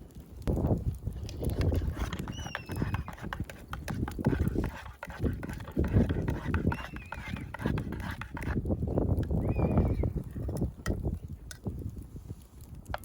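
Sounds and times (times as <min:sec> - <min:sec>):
wood fire crackling and popping: 0:00.0 - 0:13.0
short falling whistle: 0:09.4 - 0:10.1.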